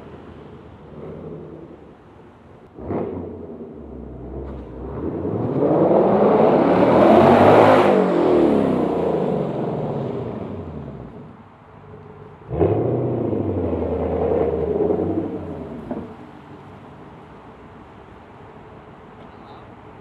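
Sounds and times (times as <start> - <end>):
car exhaust revving: 2.7 - 11.2, 11.9 - 16.4.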